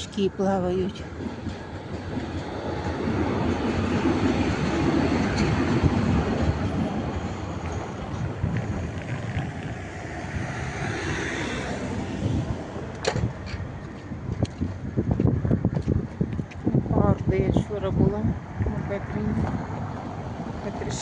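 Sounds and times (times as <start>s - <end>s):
passing vehicle rumble: 0.0s - 21.0s.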